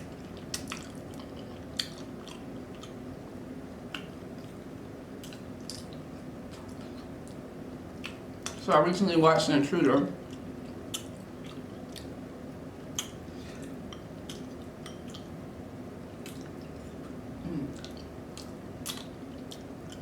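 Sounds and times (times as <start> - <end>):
wet chewing sounds: 0.2 - 3.0, 5.2 - 7.4, 10.2 - 12.2, 16.2 - 20.0.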